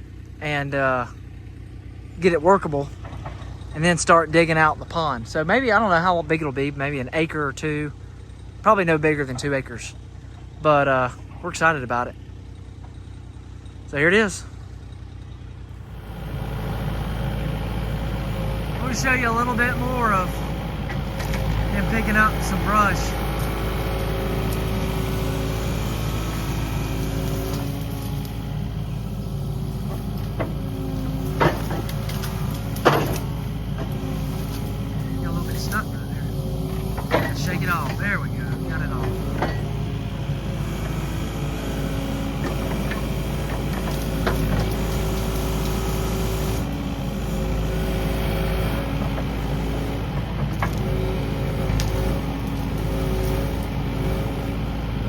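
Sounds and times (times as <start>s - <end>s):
excavator diesel engine running: 0.0s - 55.0s
sharp knocks and cracks: 29.8s - 34.8s, 36.7s - 38.0s.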